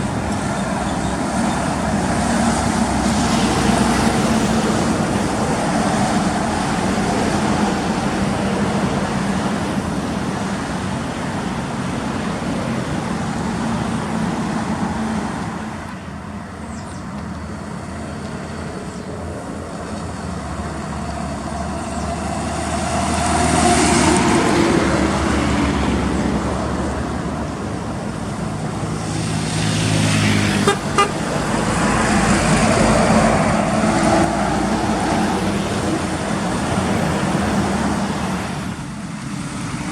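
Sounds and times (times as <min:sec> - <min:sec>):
diesel trucks passing: 0:00.0 - 0:39.9
truck horn toot: 0:30.4 - 0:31.6.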